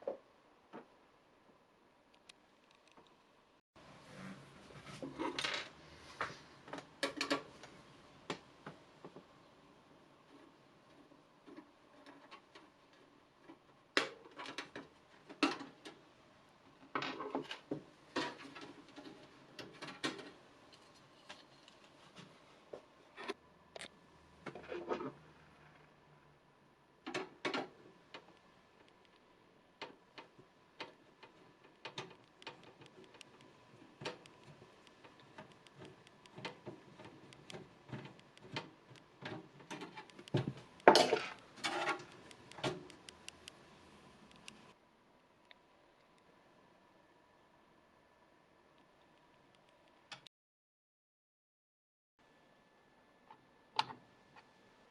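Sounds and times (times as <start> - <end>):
clicks and taps on computer parts: 29.8 - 43.6.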